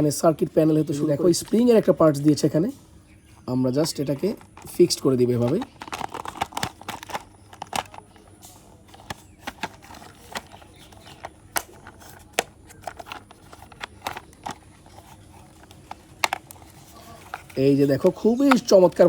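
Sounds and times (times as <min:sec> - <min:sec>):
plastic toy parts clicking: 0:03.8 - 0:19.0.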